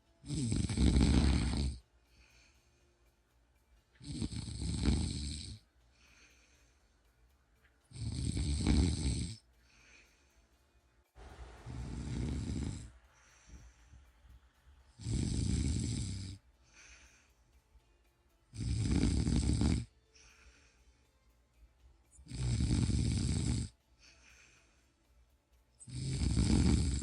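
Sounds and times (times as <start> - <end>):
person snoring: 0.2 - 2.5, 4.0 - 6.5, 7.9 - 10.1, 11.4 - 14.0, 14.9 - 17.3, 18.5 - 20.8, 22.1 - 24.8, 25.8 - 27.0
breathy out-breath: 1.2 - 3.2, 5.9 - 7.4, 9.5 - 14.4, 16.6 - 17.7, 20.0 - 21.4, 24.0 - 25.2.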